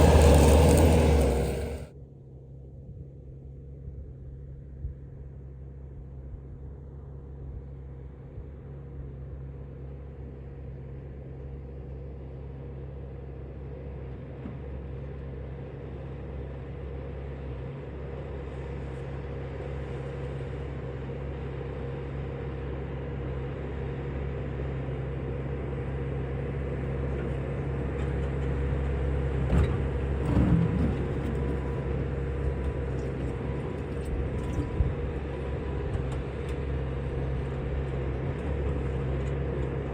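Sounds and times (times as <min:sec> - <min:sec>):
vehicle engine running: 0:00.0 - 0:01.9, 0:19.6 - 0:39.9.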